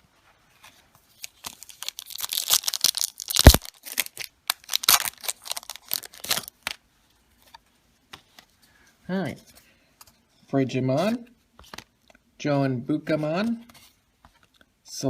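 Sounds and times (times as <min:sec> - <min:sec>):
wrapper crinkling: 0:01.1 - 0:06.8
wrapper ripping: 0:01.1 - 0:06.8.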